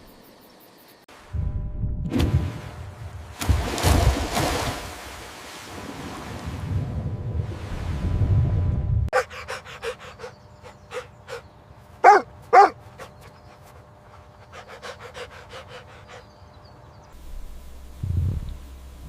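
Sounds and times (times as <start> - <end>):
dog barking: 9.1 - 11.4, 12.0 - 13.5
dog panting: 9.2 - 16.8.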